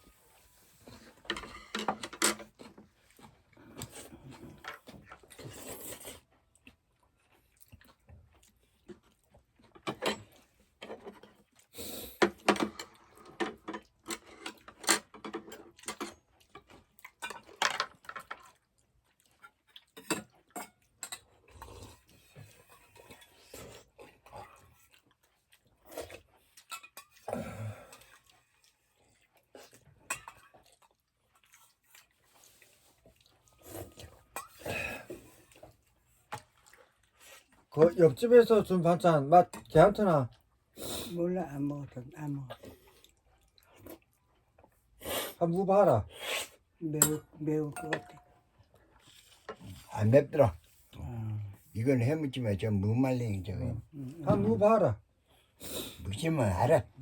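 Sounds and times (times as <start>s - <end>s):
chewing: 2.5s - 37.8s, 42.4s - 45.1s, 48.0s - 50.0s.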